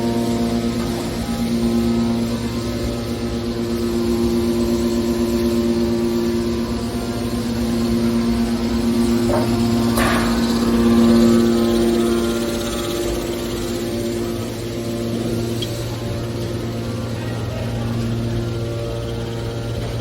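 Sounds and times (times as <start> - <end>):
baling machine droning hum: 0.0 - 20.0
machine clatter: 8.8 - 13.9.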